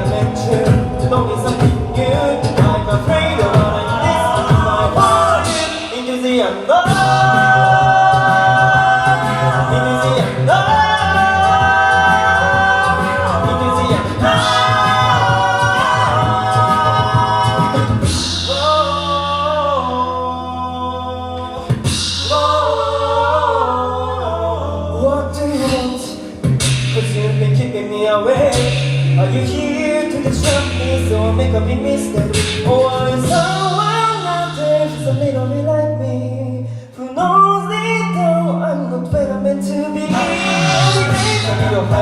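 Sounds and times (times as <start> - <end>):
a cappella group singing: 0.0 - 42.0
short percussive sounds: 40.0 - 42.0.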